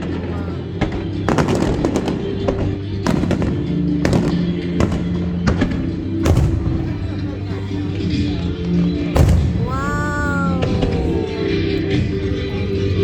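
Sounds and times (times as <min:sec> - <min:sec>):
fireworks bangs: 0:00.8 - 0:07.1, 0:09.2 - 0:10.9
loud music: 0:09.2 - 0:13.0.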